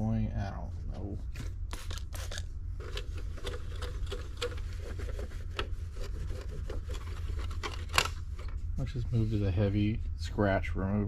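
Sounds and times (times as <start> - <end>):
steady low hum: 0.0 - 11.0
hand scrubbing plastic: 1.7 - 9.6.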